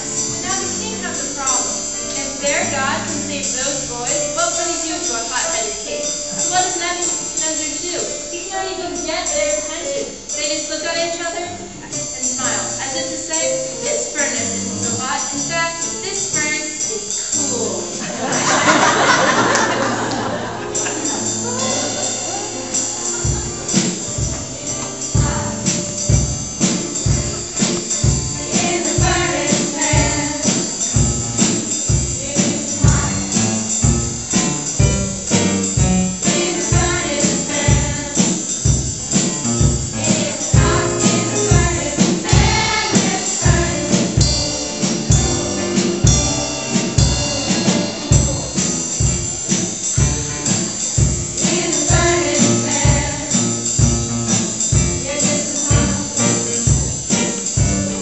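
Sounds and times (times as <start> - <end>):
tambourine: 0.0 - 11.4, 12.0 - 58.0
upbeat song with steady beat: 11.9 - 58.0
choir singing: 17.5 - 26.1, 27.6 - 33.6, 36.2 - 38.3, 39.8 - 48.8, 51.3 - 53.6, 54.8 - 58.0.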